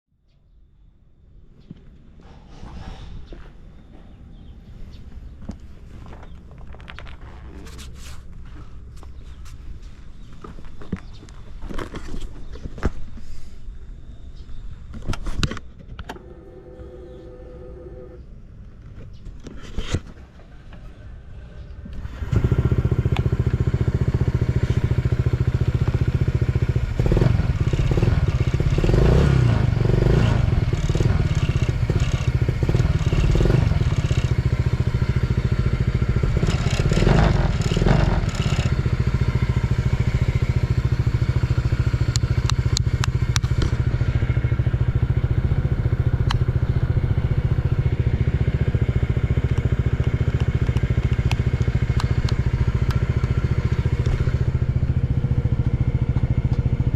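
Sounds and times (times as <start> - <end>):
scooter engine idling and revving: 20.3 - 56.9.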